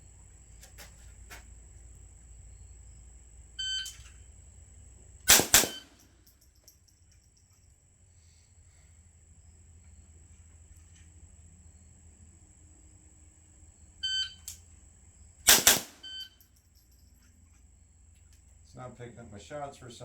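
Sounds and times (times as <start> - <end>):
gunshots: 5.3 - 6.0, 15.5 - 16.0
shot timer beep: 5.6 - 6.0, 14.0 - 14.4, 15.9 - 16.4.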